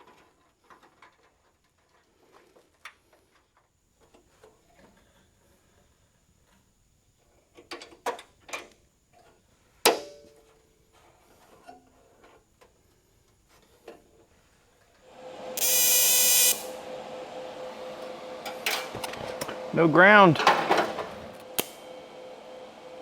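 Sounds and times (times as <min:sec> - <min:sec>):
welder humming and hissing: 0:15.2 - 0:20.3, 0:21.3 - 0:22.2.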